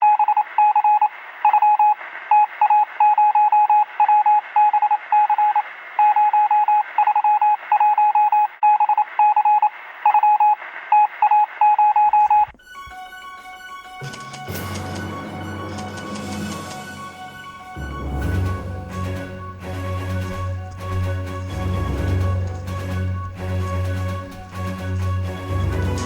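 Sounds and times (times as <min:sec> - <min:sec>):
morse code beeps: 0:00.0 - 0:14.4
music: 0:12.6 - 0:26.0.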